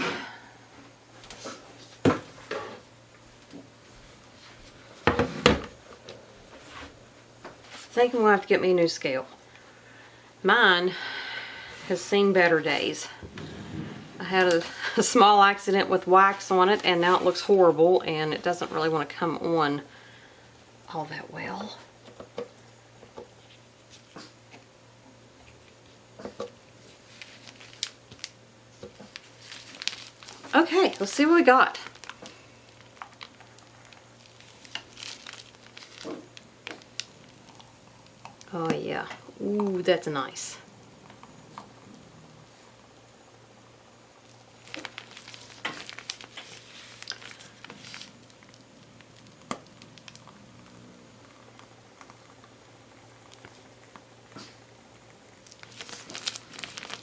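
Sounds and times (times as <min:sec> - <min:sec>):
faint low hum: 0:00.0 - 0:57.0
soft squishing and scraping: 0:44.6 - 0:48.6.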